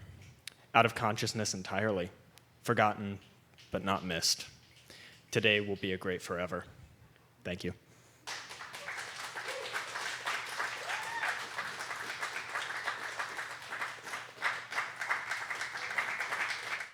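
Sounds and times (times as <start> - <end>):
audience clapping: 8.2 - 16.9
person whooping: 8.8 - 11.9.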